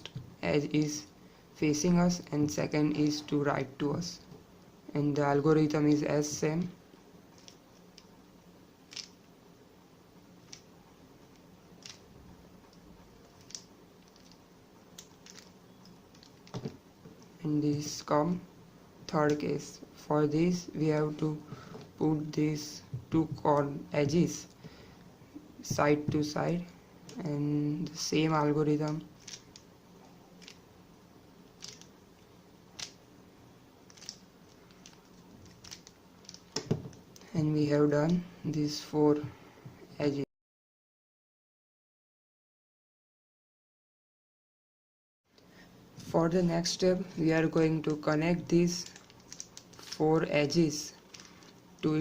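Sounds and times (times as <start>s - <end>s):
puzzle cube clicking: 8.9s - 9.2s, 31.6s - 31.9s
plastic puzzle cube clicks: 31.6s - 31.9s.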